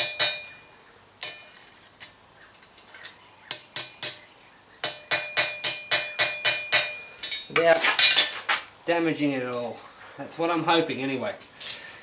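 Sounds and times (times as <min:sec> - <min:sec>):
hammer on hot steel: 0:00.0 - 0:00.6, 0:01.2 - 0:01.5, 0:03.5 - 0:04.2, 0:04.8 - 0:07.6.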